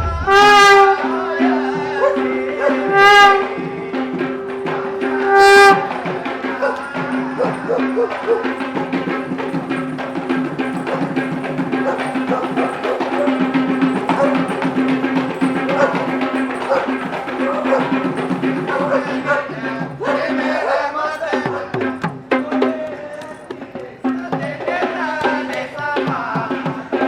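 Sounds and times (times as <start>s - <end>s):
held note: 0.0s - 19.6s
wind instrument blasts: 0.0s - 19.6s
fast dense drumming: 0.0s - 20.4s.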